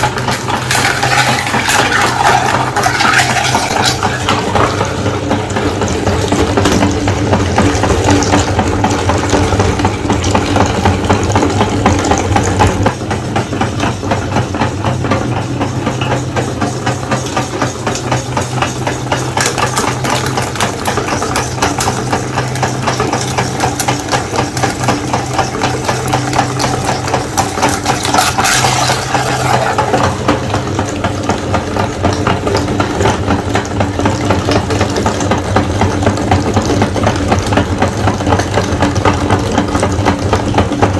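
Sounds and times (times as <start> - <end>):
crackling in grinder: 0.0 - 11.0, 18.4 - 31.0
meat grinder motor hum: 0.0 - 40.9.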